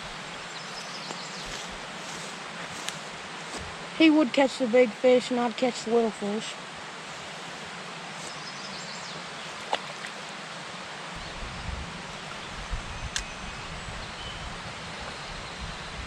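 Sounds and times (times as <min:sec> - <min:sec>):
wind rumbling on microphone: 0:11.1 - 0:16.0.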